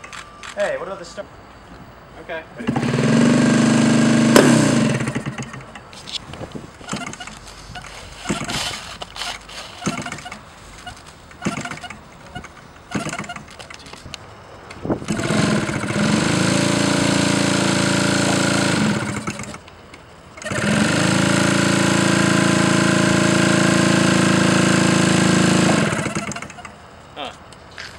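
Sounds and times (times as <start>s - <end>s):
engine knocks: 2.6s - 5.9s, 11.3s - 14.0s, 15.0s - 19.7s.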